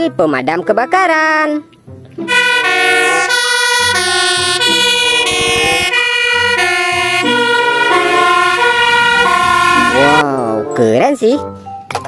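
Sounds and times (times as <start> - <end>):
fire engine siren: 2.3 - 10.2.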